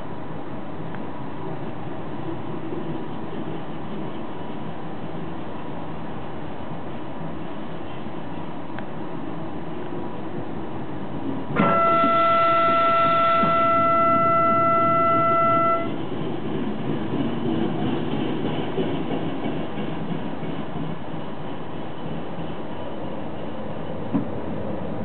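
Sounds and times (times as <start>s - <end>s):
train rumbling on rails: 0.0s - 25.0s
train horn: 11.6s - 16.0s.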